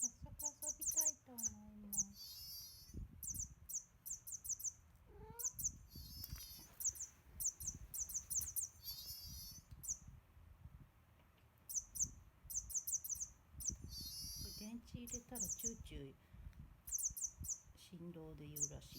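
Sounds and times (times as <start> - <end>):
toy mouse squeaking: 0.0 - 10.0, 11.7 - 15.8, 16.9 - 17.6.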